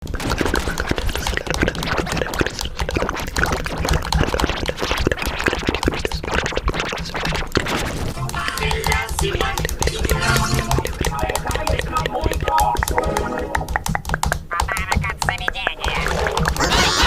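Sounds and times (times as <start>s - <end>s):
music with busy beat: 8.2s - 15.6s.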